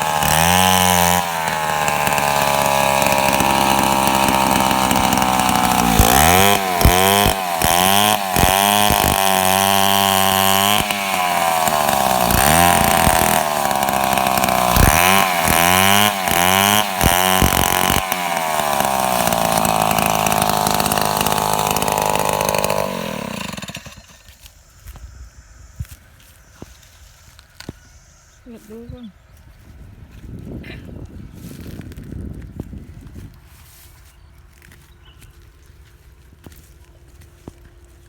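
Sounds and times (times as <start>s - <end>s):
chainsaw engine revving: 0.0s - 24.4s.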